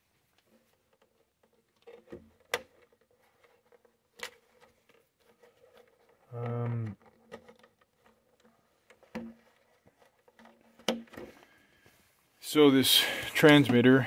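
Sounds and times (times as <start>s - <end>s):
plastic clicks and knocks: 0.5s - 11.4s.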